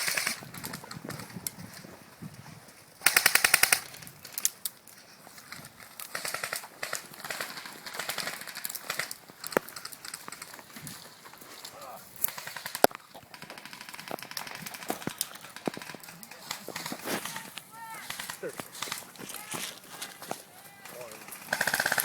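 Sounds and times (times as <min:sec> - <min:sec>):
airsoft guns firing bursts: 0:00.0 - 0:00.8, 0:03.0 - 0:04.1, 0:06.0 - 0:10.6, 0:12.2 - 0:19.3, 0:20.8 - 0:22.0.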